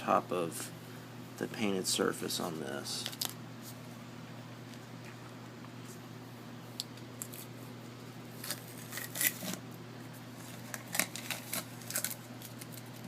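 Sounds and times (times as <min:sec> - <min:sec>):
masking tape crinkling and clicking: 0:03.0 - 0:03.4, 0:10.6 - 0:13.0.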